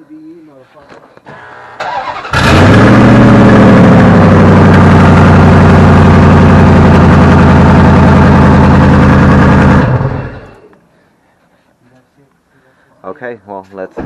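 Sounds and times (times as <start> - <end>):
car engine idling loud: 1.8 - 10.7.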